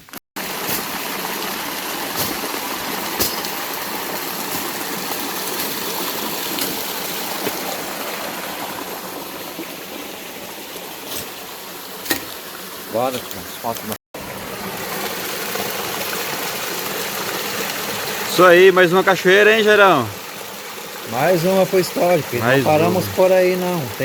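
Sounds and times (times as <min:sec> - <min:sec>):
waterfall rushing: 0:00.4 - 0:24.0.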